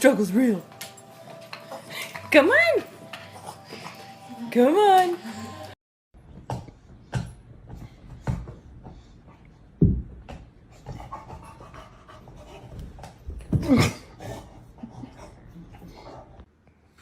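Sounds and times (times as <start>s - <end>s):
dog panting: 1.0s - 4.4s, 10.6s - 13.5s.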